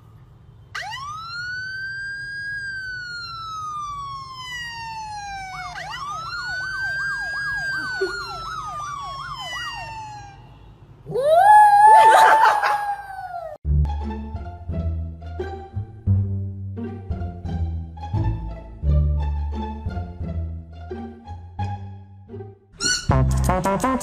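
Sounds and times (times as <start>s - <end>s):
siren wailing: 0.7s - 13.6s
siren yelp: 0.7s - 13.6s.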